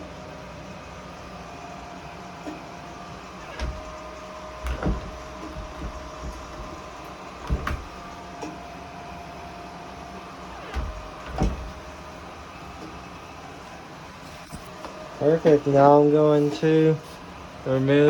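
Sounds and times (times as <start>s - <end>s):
door knocking plastic stopper: 4.6s - 6.8s.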